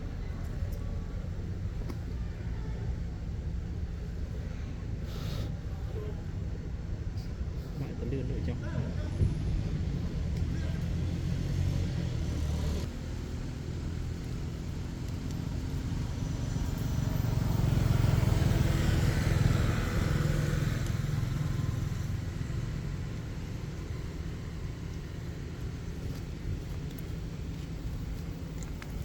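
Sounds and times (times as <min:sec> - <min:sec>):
vehicle passing by: 0:07.8 - 0:26.0.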